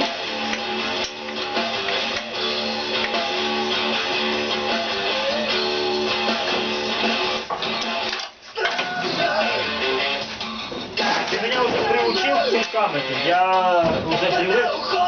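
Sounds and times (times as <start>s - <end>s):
strummed guitar music: 0.0s - 15.0s.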